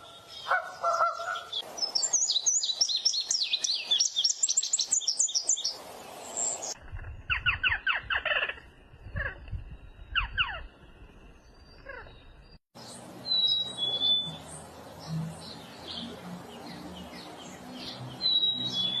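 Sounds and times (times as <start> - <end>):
birds chirping: 0.0 - 19.0
whistled bird notes: 9.0 - 16.1, 17.0 - 19.0.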